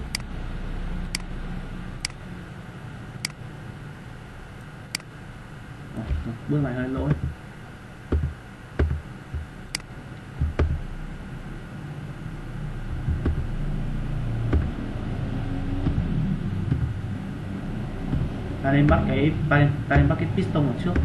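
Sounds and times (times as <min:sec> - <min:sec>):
low rumble: 0:08.2 - 0:21.0.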